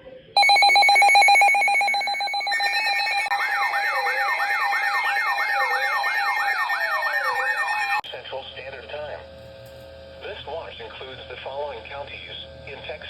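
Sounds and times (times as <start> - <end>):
rapidly pulsing alarm tone: 0.4 - 8.0
siren yelp: 0.4 - 8.0
slow falling siren wail: 0.4 - 8.0.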